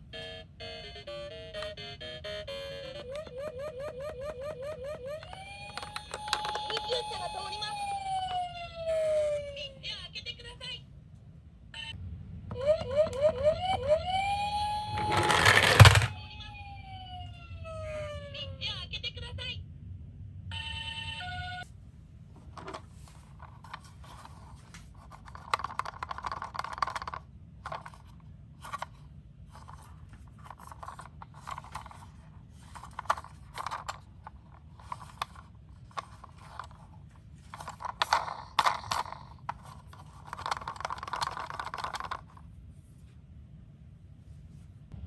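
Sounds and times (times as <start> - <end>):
toy cars rattling on plastic: 5.2 - 7.0, 14.9 - 16.1, 22.6 - 42.4.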